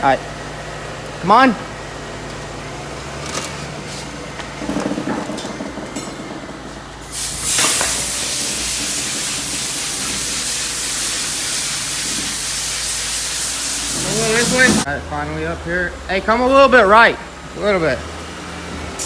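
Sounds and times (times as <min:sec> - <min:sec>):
knocks and clatter: 0:04.3 - 0:08.6
loud steady hiss: 0:07.0 - 0:14.9.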